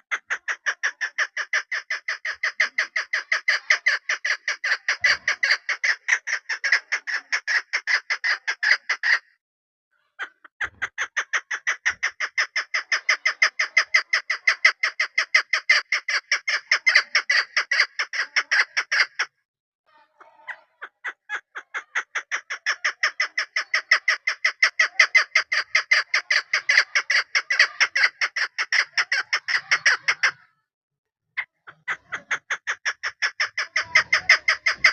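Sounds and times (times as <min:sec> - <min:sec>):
partridge calling rapid notes: 0:00.0 - 0:09.3, 0:10.2 - 0:19.3, 0:20.4 - 0:30.4, 0:31.4 - 0:34.9.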